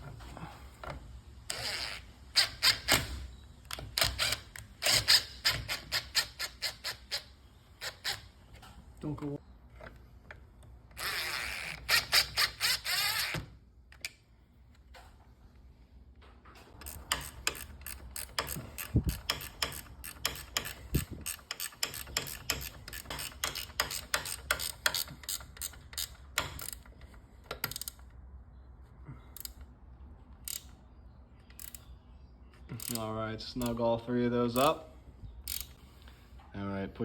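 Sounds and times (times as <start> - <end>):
ratchet wrench clicking: 16.8 - 28.1, 29.3 - 29.6, 30.4 - 30.8, 31.5 - 31.9, 32.8 - 33.8, 35.4 - 35.8.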